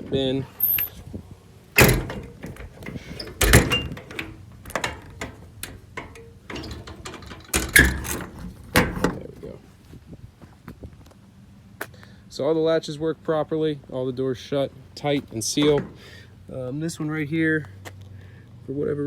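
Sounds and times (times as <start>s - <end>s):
latches clicking and rattling: 0.0s - 1.0s, 1.7s - 9.3s, 15.5s - 16.2s
metal doors banging shut: 1.8s - 9.3s, 15.5s - 16.2s.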